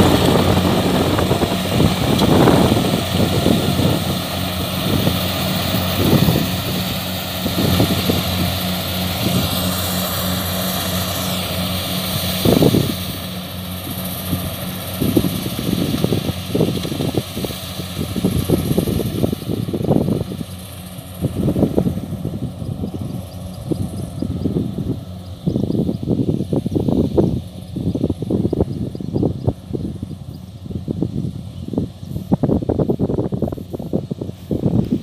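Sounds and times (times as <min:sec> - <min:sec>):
combine harvester engine drone: 0:00.0 - 0:35.0
low rumbling: 0:00.0 - 0:35.0.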